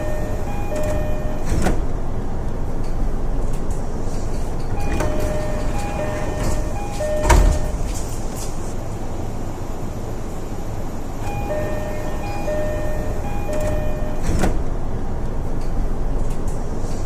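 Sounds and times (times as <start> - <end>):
two-tone door chime: 0.0 - 1.7, 4.8 - 8.2, 11.2 - 14.6
sliding doors shutting thud: 0.0 - 2.0, 4.3 - 8.8, 11.3 - 14.8
train rumble: 0.0 - 17.0.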